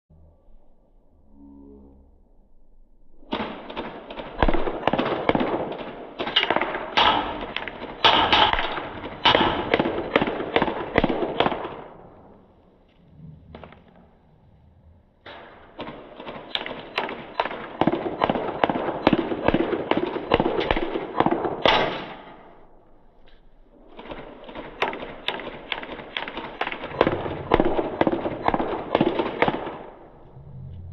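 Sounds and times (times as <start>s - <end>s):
airsoft gun firing rapid shots: 3.3s - 12.4s, 15.8s - 22.7s, 23.8s - 30.2s.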